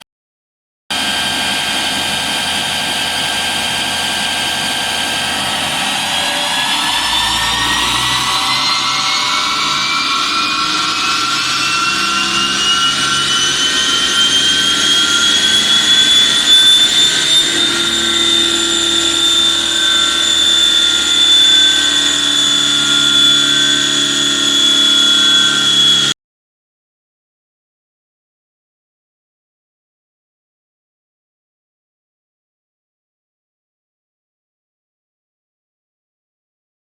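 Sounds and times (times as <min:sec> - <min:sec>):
diesel engine running hard: 0:00.9 - 0:26.2
high turbocharger whistle: 0:00.9 - 0:26.2.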